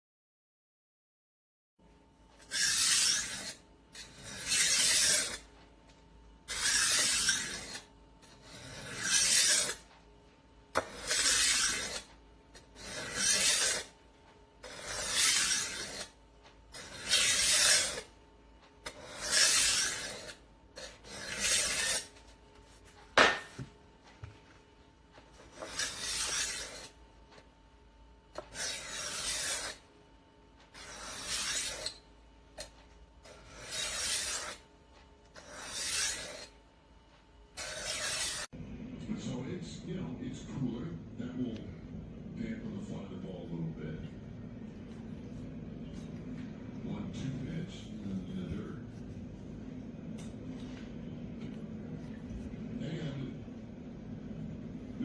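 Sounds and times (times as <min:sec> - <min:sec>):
knife sharpener rasping on blade: 0:02.4 - 0:05.4, 0:06.5 - 0:09.9, 0:10.8 - 0:14.0, 0:14.6 - 0:18.1, 0:18.8 - 0:22.2, 0:25.5 - 0:27.0, 0:28.4 - 0:29.8, 0:30.8 - 0:32.0, 0:32.6 - 0:34.6, 0:35.4 - 0:36.6, 0:37.6 - 0:38.5.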